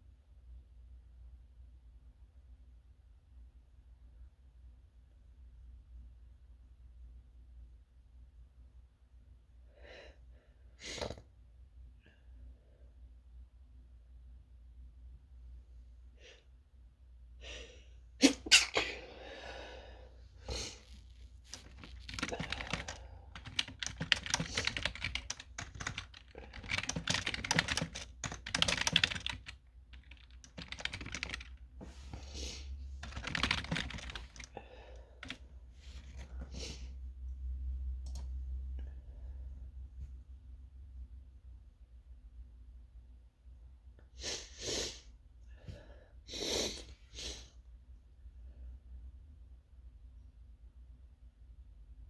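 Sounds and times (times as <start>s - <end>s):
computer keyboard typing: 21.5s - 31.7s, 33.0s - 34.6s, 35.2s - 35.4s.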